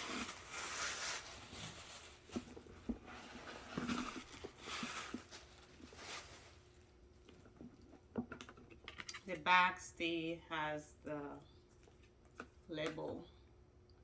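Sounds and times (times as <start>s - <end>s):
paper wrapping rustling: 0.0s - 6.8s.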